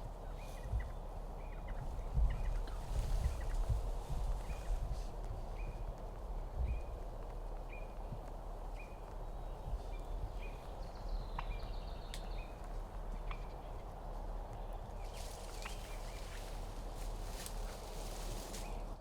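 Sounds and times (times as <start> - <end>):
background hiss: 0.0 - 19.0
faint clicks: 5.2 - 17.8.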